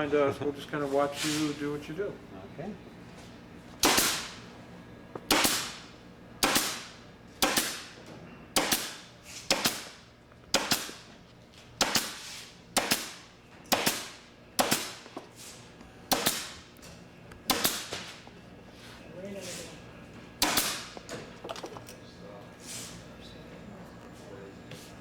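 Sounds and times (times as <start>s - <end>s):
pneumatic staple gun firing: 3.8s - 4.4s, 5.3s - 8.0s, 8.6s - 11.1s, 11.8s - 15.2s, 16.1s - 16.7s, 17.5s - 18.2s, 20.4s - 21.0s.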